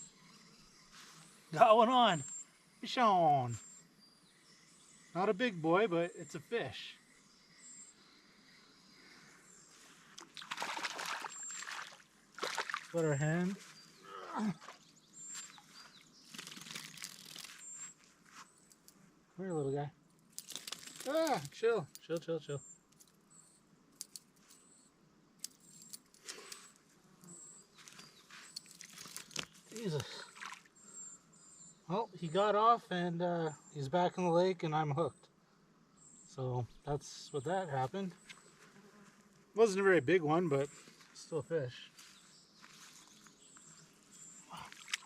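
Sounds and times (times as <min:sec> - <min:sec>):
fish splashing at water surface: 0:10.2 - 0:13.0
faint clicks and rustles: 0:25.4 - 0:29.9.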